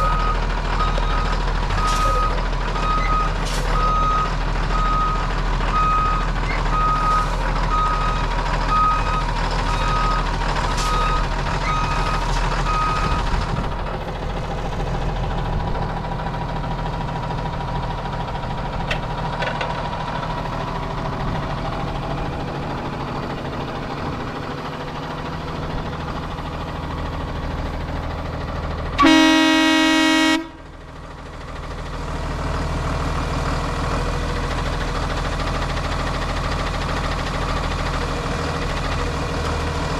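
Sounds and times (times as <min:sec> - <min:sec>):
bus engine running: 0:00.0 - 0:39.9
reverse alarm beeping: 0:05.8 - 0:10.3, 0:10.9 - 0:13.2
bus horn honk: 0:29.0 - 0:30.6.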